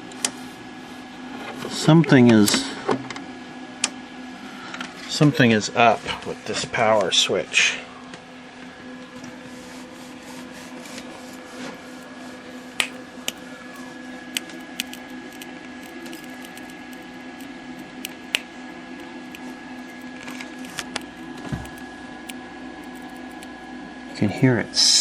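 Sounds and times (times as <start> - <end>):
steady hum: 8.4 - 25.0
electrical switch arcing and crackling: 12.8 - 13.5, 14.3 - 23.6.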